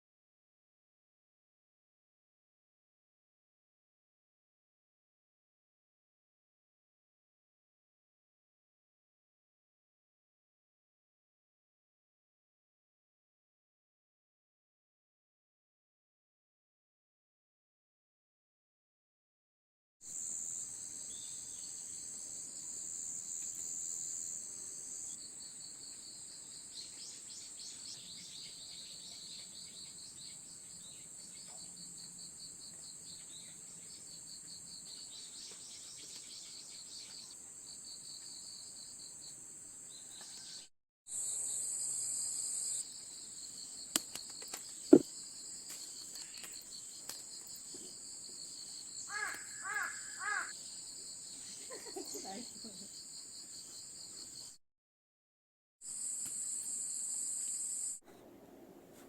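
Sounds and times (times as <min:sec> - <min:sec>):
crickets and insects trilling: 0:41.2 - 0:54.5.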